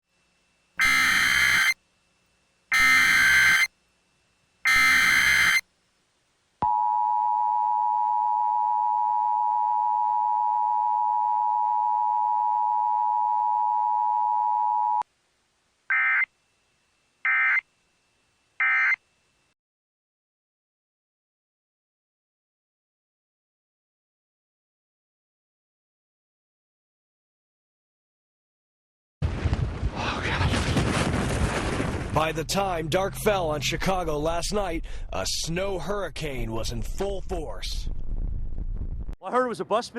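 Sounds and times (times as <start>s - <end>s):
data bursts: 0.8s - 1.8s, 2.7s - 3.7s, 4.6s - 5.6s
two-tone attention signal: 0.8s - 1.8s, 2.7s - 3.7s, 4.7s - 5.6s.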